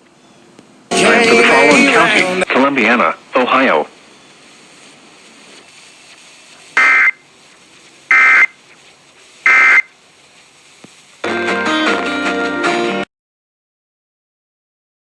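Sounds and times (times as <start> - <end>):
two-tone digital data bursts: 5.7 - 7.2, 8.1 - 8.6, 9.4 - 9.9.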